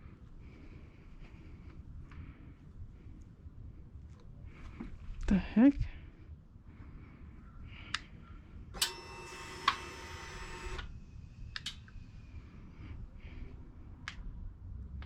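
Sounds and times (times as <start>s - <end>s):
buzzing whirr: 8.8s - 12.4s.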